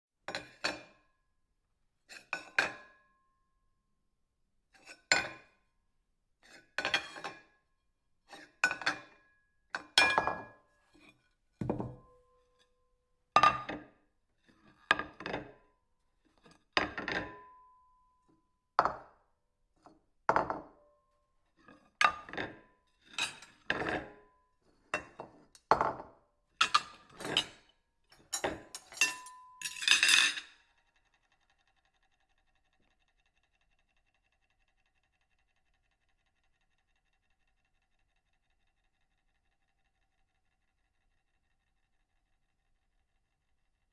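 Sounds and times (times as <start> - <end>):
ceramic plates clinking: 28.2 - 30.5.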